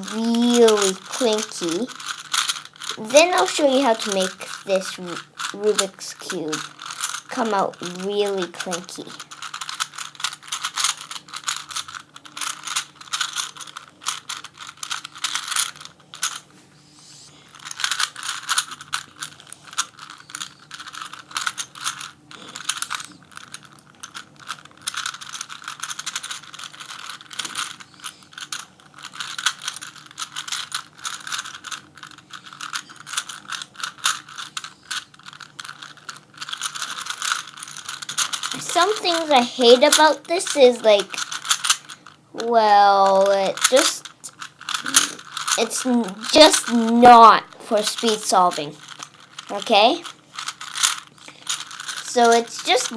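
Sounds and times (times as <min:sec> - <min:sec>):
plastic puzzle cube clicking: 0:01.9 - 0:03.0, 0:05.2 - 0:05.6, 0:06.6 - 0:07.2, 0:09.1 - 0:16.4, 0:17.6 - 0:42.2, 0:43.6 - 0:45.7, 0:48.8 - 0:52.8.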